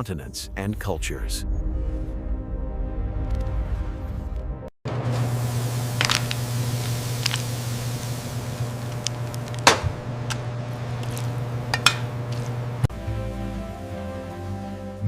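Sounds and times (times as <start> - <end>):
steady low hum: 5.0 - 14.4
soft music: 12.9 - 15.0.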